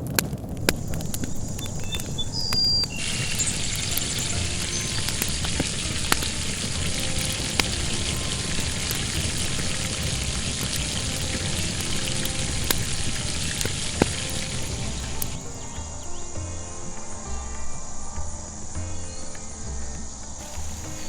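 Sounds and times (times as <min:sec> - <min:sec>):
oil popping and crackling: 0:00.0 - 0:16.1, 0:20.4 - 0:21.0
fish sizzling in hot oil: 0:00.2 - 0:16.0, 0:20.4 - 0:21.0.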